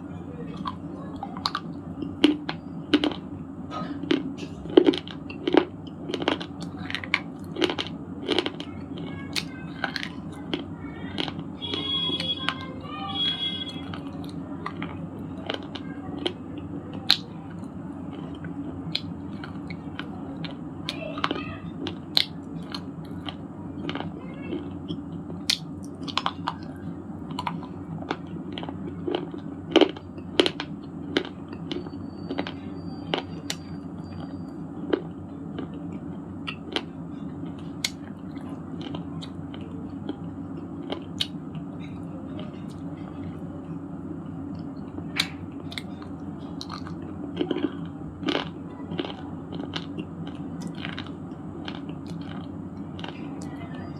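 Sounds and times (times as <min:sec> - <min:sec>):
low background hum: 0:00.0 - 0:53.9
stone being chewed with crunches: 0:45.2 - 0:53.2.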